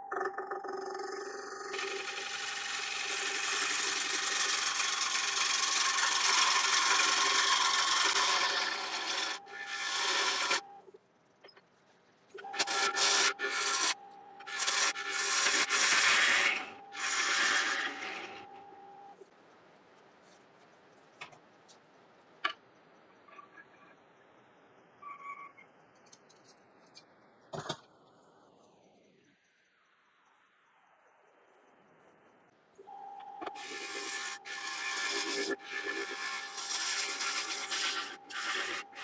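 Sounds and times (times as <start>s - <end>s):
wood lathe whine: 0.0s - 10.9s, 12.4s - 19.2s, 33.0s - 39.0s
turning tool cutting wood: 1.4s - 10.8s, 12.4s - 18.7s, 33.4s - 39.0s.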